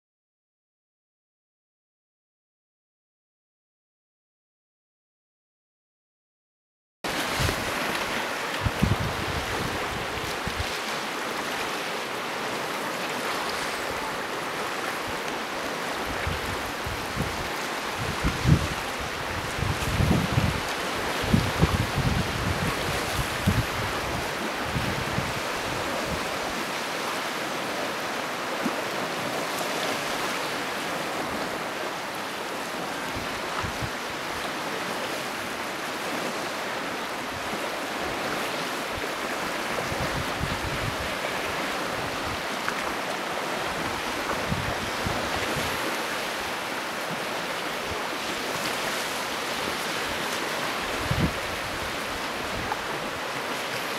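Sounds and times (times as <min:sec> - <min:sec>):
waves washing on shore: 0:07.1 - 0:53.9
wind buffeting microphone: 0:07.2 - 0:10.8, 0:16.0 - 0:26.6, 0:33.1 - 0:34.2, 0:39.8 - 0:42.5, 0:43.7 - 0:45.9, 0:49.5 - 0:53.2.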